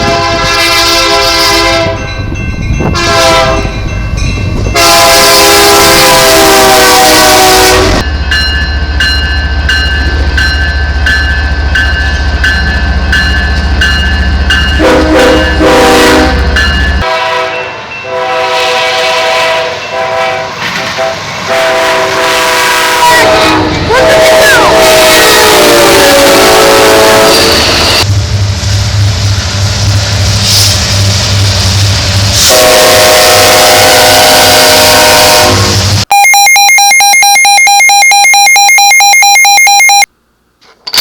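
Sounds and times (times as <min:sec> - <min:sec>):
train horn blasts: 0:00.0 - 0:02.1, 0:02.8 - 0:03.8, 0:04.7 - 0:08.0, 0:14.8 - 0:28.1, 0:32.4 - 0:35.9
passing train rumble and clatter: 0:00.0 - 0:36.1.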